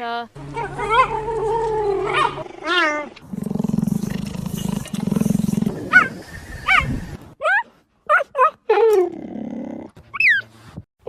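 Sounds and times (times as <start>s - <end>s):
cheetah purring: 0.6s - 7.0s
cheetah chirping: 3.2s - 7.2s.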